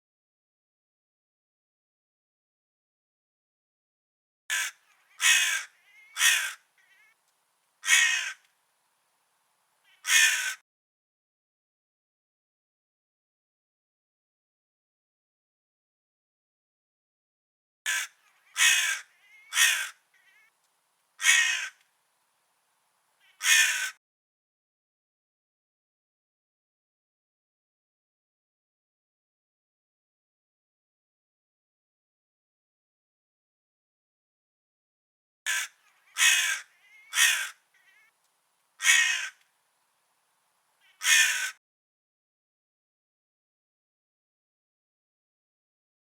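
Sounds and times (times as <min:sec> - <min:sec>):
crow cawing: 0:04.5 - 0:07.2, 0:07.8 - 0:08.5, 0:09.8 - 0:10.6, 0:17.9 - 0:20.5, 0:21.2 - 0:21.8, 0:23.2 - 0:24.0, 0:35.5 - 0:38.1, 0:38.8 - 0:39.4, 0:40.8 - 0:41.6.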